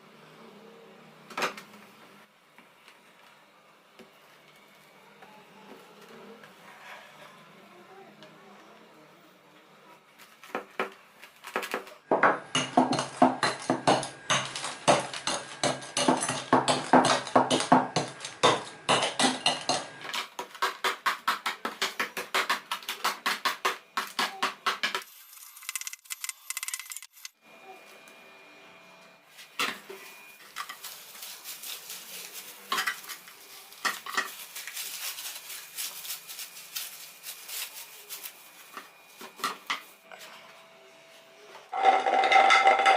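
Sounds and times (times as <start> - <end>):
metal utensil scraping a pan: 41.8 - 42.9.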